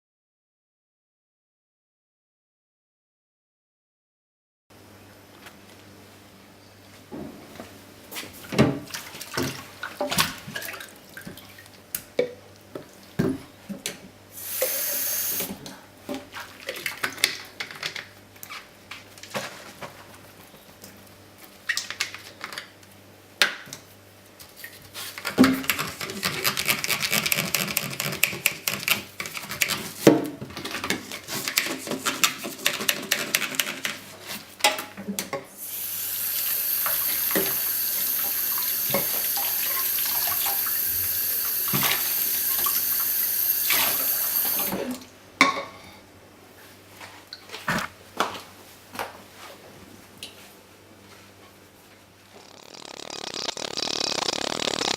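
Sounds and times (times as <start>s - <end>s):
tap water running: 14.4s - 15.6s, 35.6s - 45.0s.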